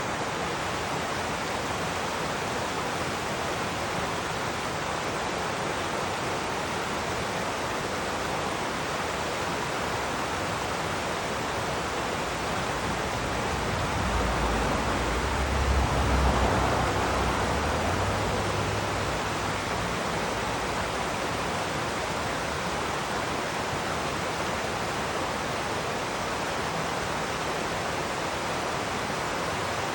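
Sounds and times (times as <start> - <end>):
river rushing over rocks: 0.0 - 29.9
low rumble: 13.3 - 19.4.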